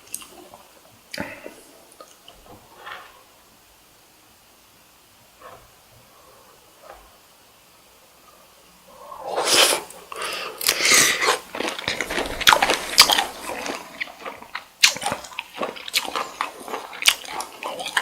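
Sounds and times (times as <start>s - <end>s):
wet chewing mouth sounds: 10.6s - 18.0s.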